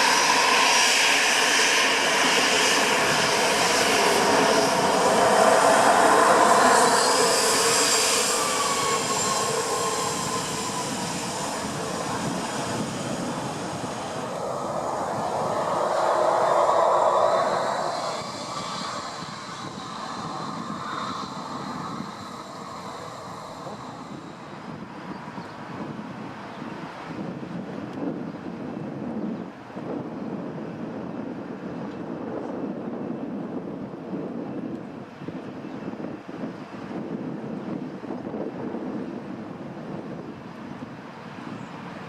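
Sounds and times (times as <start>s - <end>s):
falling whine: 0.0s - 25.3s
jet engines roaring: 0.0s - 35.0s.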